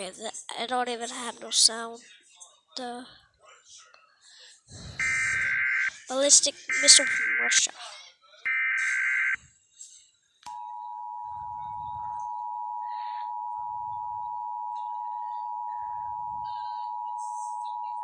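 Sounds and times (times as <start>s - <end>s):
low pulses: 5.0s - 5.8s
two-tone alarm: 5.0s - 6.0s, 6.7s - 7.7s, 8.5s - 9.4s, 10.5s - 18.0s.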